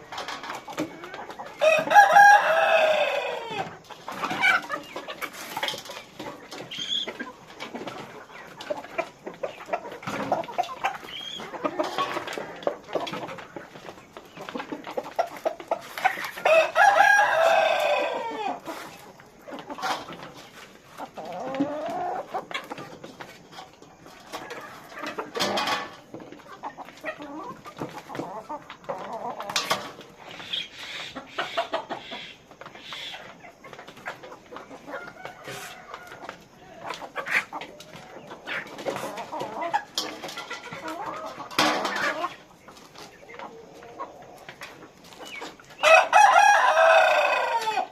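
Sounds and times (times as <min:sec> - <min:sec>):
chickens clucking: 0:00.0 - 0:47.9
rooster crowing: 0:01.6 - 0:03.7, 0:16.4 - 0:18.6, 0:34.9 - 0:36.3, 0:45.8 - 0:47.9.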